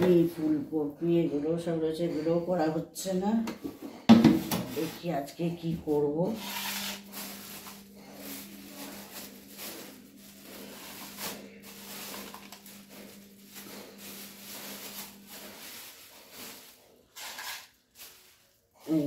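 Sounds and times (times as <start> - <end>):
steady low hum: 0.0 - 19.0
rustling and handling noises: 6.4 - 19.0.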